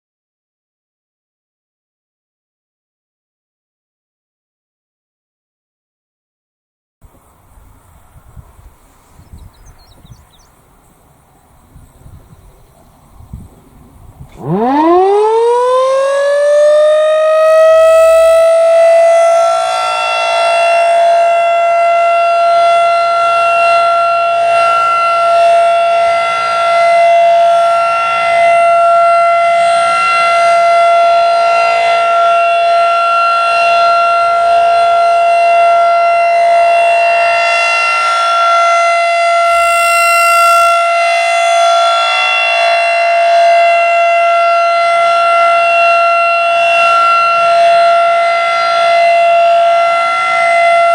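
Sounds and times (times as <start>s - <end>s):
warning siren wailing: 14.1s - 50.9s.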